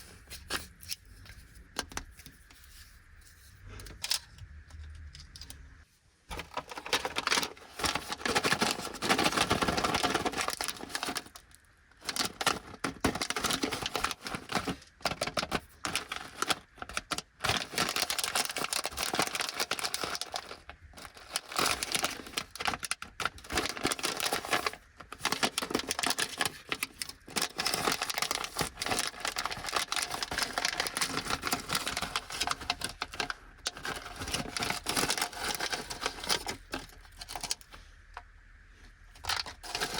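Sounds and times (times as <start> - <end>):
plastic snack bags crinkling: 6.3 - 37.9, 39.1 - 39.9.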